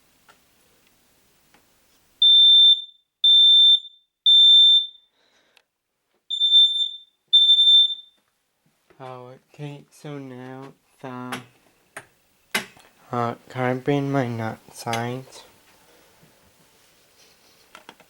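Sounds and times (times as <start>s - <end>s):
smoke alarm beeping: 2.2s - 5.2s, 6.3s - 8.2s.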